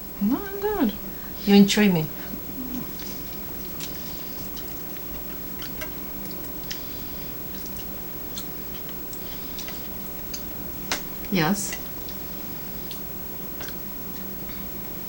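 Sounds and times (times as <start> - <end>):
steady low hum: 0.0 - 15.0
chewing: 2.3 - 15.0.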